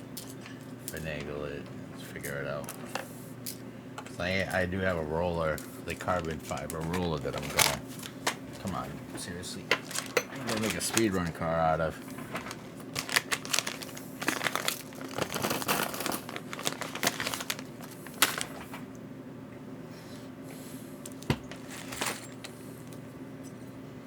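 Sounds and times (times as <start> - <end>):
plastic packaging crinkling: 5.4 - 18.8.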